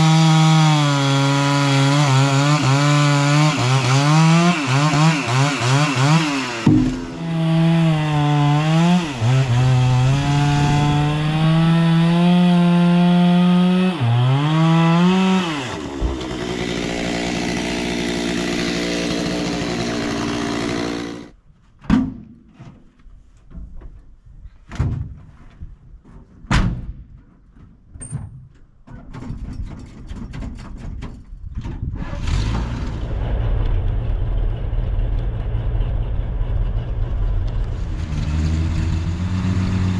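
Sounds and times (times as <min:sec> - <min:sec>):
chainsaw cutting log: 0:00.0 - 0:21.3
engine running: 0:04.4 - 0:21.3, 0:32.8 - 0:39.9
knocks and thumps: 0:06.6 - 0:08.9.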